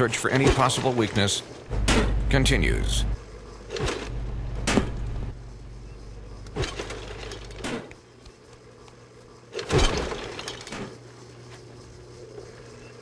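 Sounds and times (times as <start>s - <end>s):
low hum: 0.0s - 13.0s
sharp mechanical knocks: 1.7s - 2.3s.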